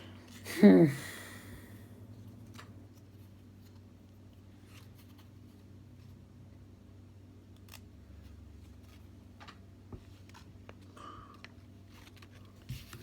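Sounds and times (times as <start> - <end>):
low steady hum: 0.0 - 13.0
small clicks and rustles: 7.6 - 13.0.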